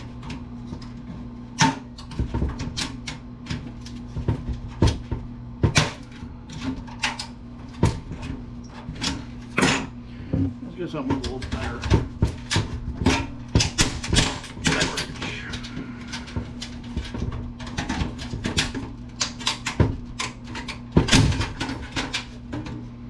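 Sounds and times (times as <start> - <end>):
steady low hum: 0.0 - 23.0
tools clattering on computer case: 11.0 - 22.9.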